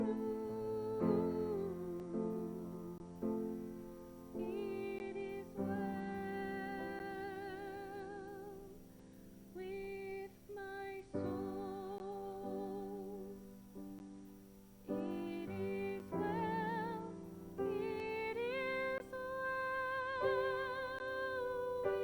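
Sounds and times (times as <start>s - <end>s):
woman singing: 0.0s - 3.6s, 4.3s - 8.9s, 9.5s - 13.6s, 14.9s - 22.0s.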